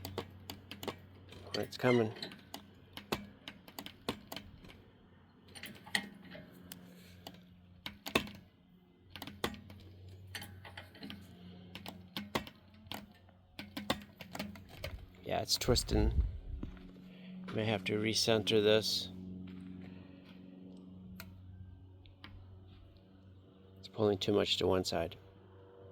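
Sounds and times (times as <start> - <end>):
tire clicking and creaking on rim: 0.0 - 8.5, 9.1 - 16.9.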